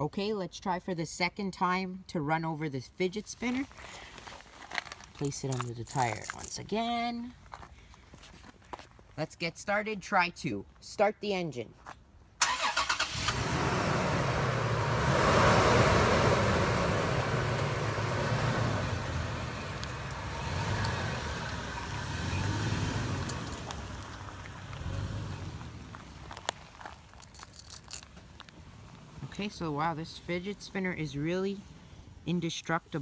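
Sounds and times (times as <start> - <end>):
car engine starting and running: 12.4 - 30.3.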